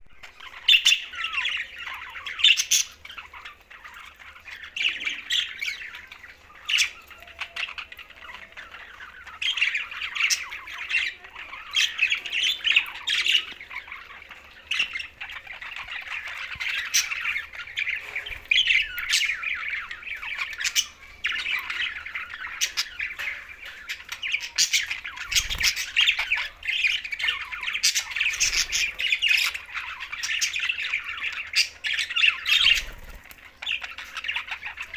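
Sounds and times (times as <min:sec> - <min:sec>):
budgerigars chattering and warbling: 0:00.1 - 0:34.9.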